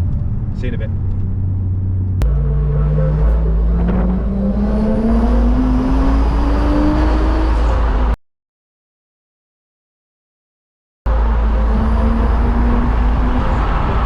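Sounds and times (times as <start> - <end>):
car engine accelerating: 0.0 - 8.2, 11.1 - 14.0.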